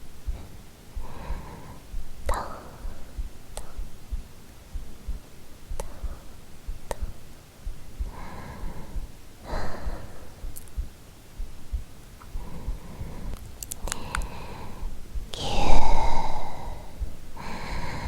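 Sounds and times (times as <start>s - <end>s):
heartbeat thumping: 0.0s - 18.0s
mouth clicks: 0.0s - 18.0s
woman breathing slowly: 0.0s - 18.0s.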